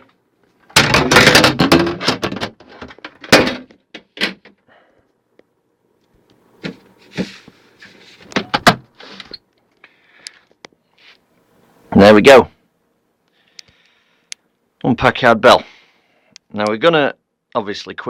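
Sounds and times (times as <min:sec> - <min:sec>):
knocks and thunks on a computer case: 0:00.7 - 0:04.6, 0:08.4 - 0:08.9.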